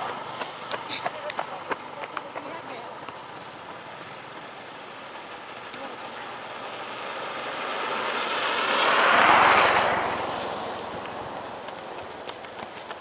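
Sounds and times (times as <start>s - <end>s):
vehicle driving past: 3.2s - 13.0s.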